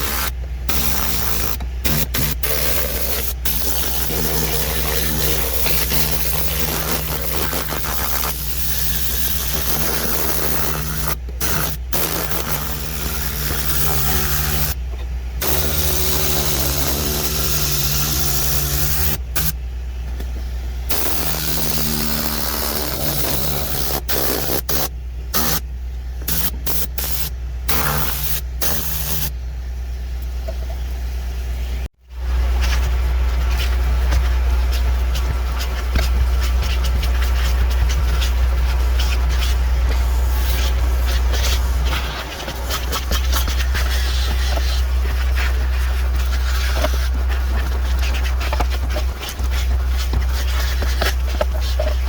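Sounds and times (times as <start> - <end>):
motor humming: 0.0 - 52.0
compressed air gun hissing: 26.3 - 29.3.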